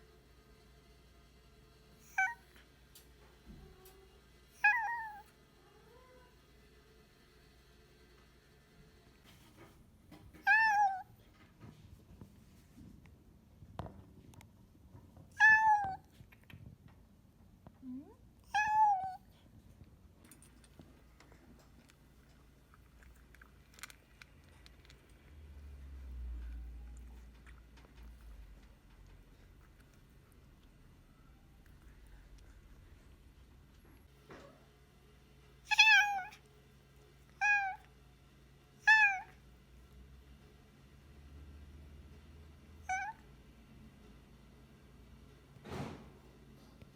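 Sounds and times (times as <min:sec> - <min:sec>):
cat chirp: 0:02.0 - 0:02.4, 0:04.6 - 0:05.2, 0:10.4 - 0:11.1, 0:15.3 - 0:16.1, 0:18.5 - 0:19.2, 0:35.7 - 0:36.4, 0:37.4 - 0:37.8, 0:38.8 - 0:39.3, 0:42.8 - 0:43.2
cat meowing: 0:02.0 - 0:02.4, 0:04.6 - 0:05.2, 0:10.4 - 0:11.1, 0:15.3 - 0:16.1, 0:18.5 - 0:19.3, 0:35.7 - 0:36.4, 0:37.4 - 0:37.9, 0:38.8 - 0:39.4, 0:42.8 - 0:43.2
faint clicks and rustles: 0:19.2 - 0:34.6.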